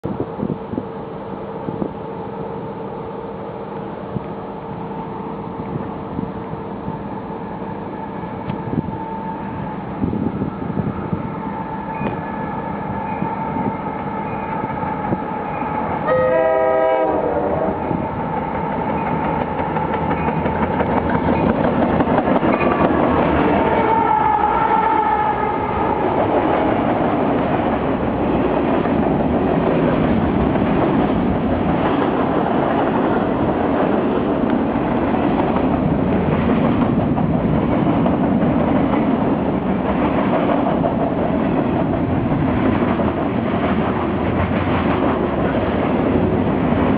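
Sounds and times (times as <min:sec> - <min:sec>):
freight train rumbling on rails: 0:00.0 - 0:46.9
train horn blasting: 0:11.5 - 0:18.1, 0:23.6 - 0:26.0.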